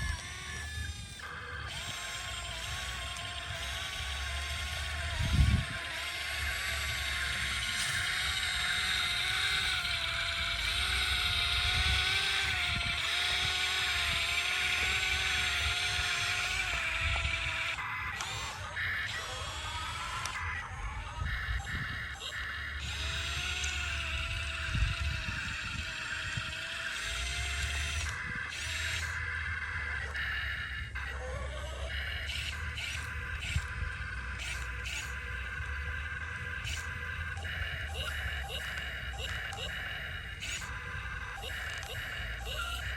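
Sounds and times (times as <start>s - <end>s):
excavator engine and hydraulics: 0.0s - 42.9s.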